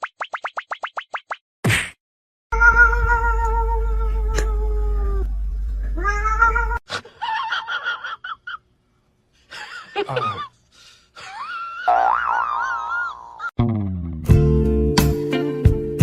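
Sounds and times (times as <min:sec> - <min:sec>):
cat meowing: 0:02.6 - 0:05.2.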